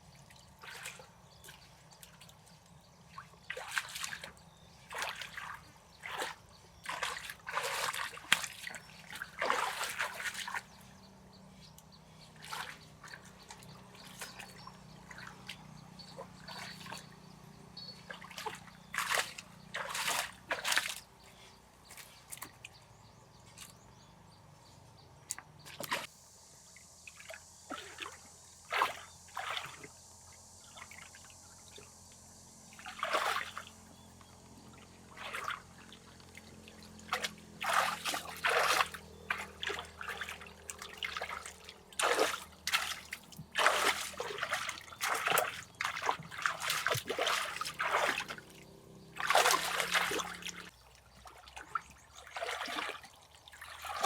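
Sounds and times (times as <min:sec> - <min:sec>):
water splashing and sloshing: 0:00.0 - 0:26.2, 0:26.8 - 0:54.0
water trickling: 0:26.7 - 0:54.0.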